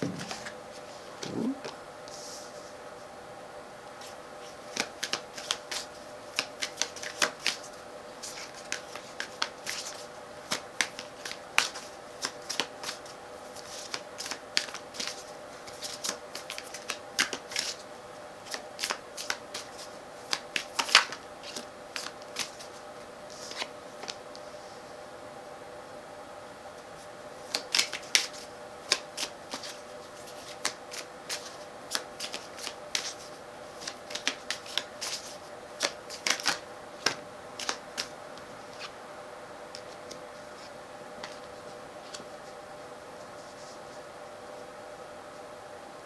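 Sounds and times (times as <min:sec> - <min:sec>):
steady hum: 0:00.0 - 0:01.8
cards being shuffled: 0:27.5 - 0:38.1.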